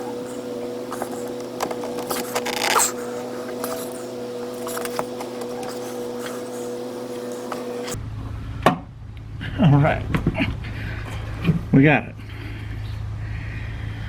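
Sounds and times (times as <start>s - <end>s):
lawn mower engine drone: 0.0s - 14.0s
metal scraping and knocking: 0.9s - 6.5s.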